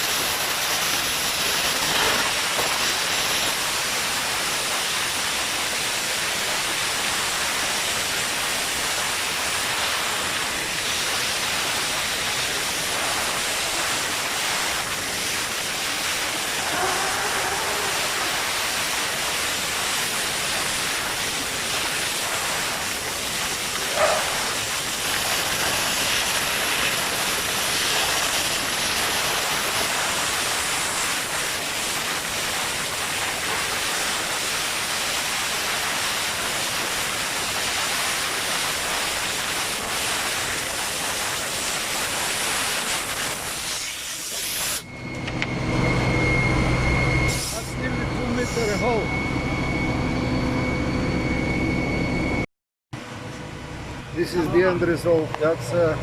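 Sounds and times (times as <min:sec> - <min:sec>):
vacuum excavator suction hiss: 0:09.1 - 0:32.3, 0:41.3 - 0:44.9, 0:47.3 - 0:48.8.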